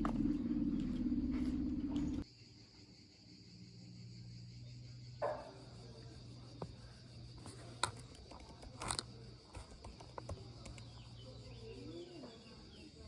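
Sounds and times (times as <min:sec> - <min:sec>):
insects chorus: 0:00.0 - 0:13.0.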